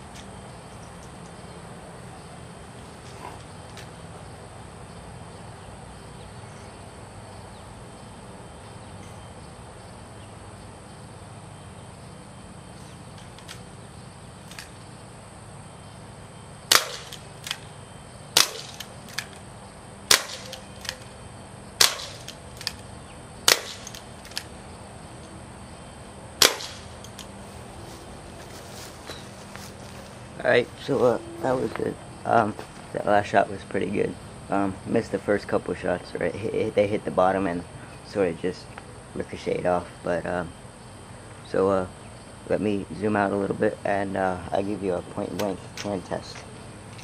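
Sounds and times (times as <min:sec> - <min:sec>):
low background noise: 0:00.0 - 0:47.0
airsoft revolver shots: 0:16.7 - 0:17.6, 0:18.3 - 0:19.3, 0:20.1 - 0:21.0, 0:21.8 - 0:22.7, 0:23.4 - 0:24.0, 0:26.4 - 0:27.0.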